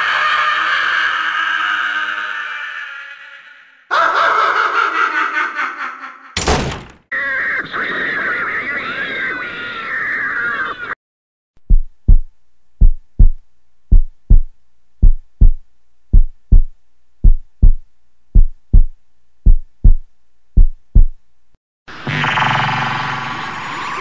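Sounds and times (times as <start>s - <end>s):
heartbeat thumps: 11.6s - 21.2s.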